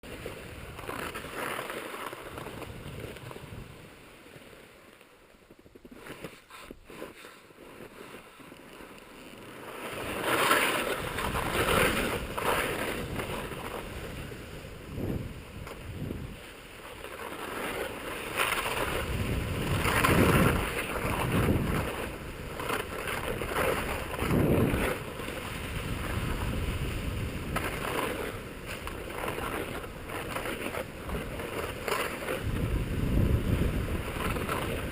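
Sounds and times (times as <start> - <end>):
skis sliding over snow: 0.0 - 34.9
wind on microphone: 10.0 - 16.5, 18.4 - 34.9.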